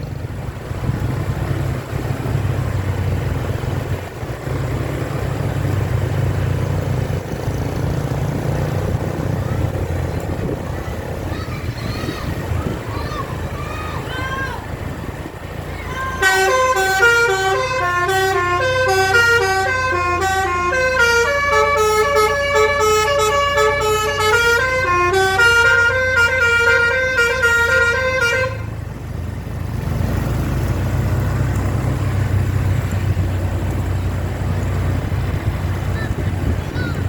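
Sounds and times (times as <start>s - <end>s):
bus horn playing a tune: 16.0s - 28.9s.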